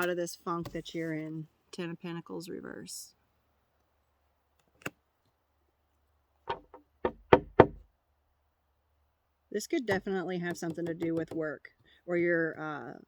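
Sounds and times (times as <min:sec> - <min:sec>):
knocks or taps: 0:06.5 - 0:07.8.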